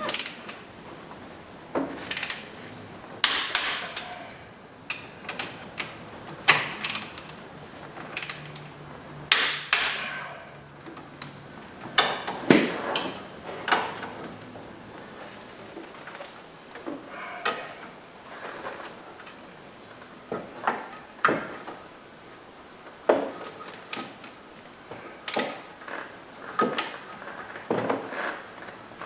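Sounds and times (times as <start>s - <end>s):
torque wrench ratchet clicks: 2.1s - 2.5s, 6.8s - 7.3s, 8.2s - 8.7s.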